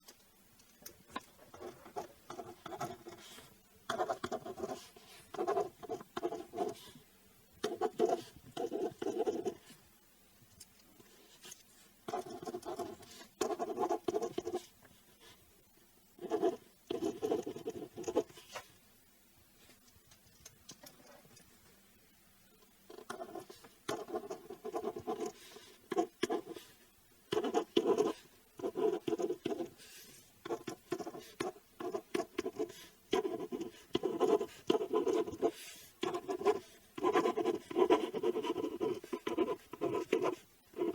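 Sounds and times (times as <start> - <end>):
ballpoint pen writing on paper: 1.4 - 7.0, 7.6 - 9.7, 11.4 - 14.7, 16.2 - 18.6, 22.9 - 40.9.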